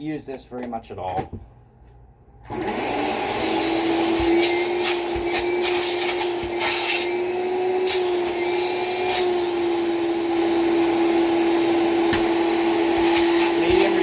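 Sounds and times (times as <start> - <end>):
vacuum cleaner motor whine: 2.5 - 14.0.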